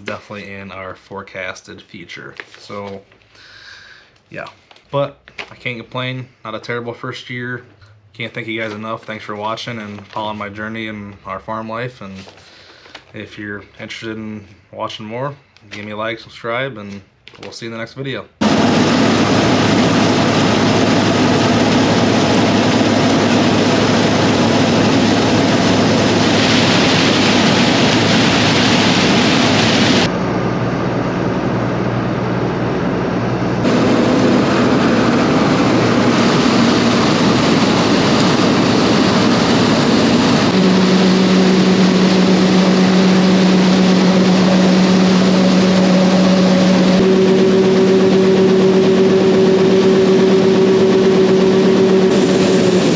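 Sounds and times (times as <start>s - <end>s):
farm machinery engine running: 18.4s - 52.9s
steady hum: 18.4s - 52.9s.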